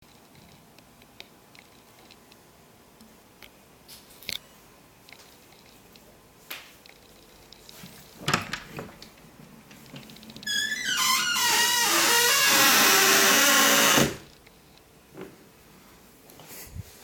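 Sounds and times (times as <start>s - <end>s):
door clicks and knocks: 8.2s - 9.0s.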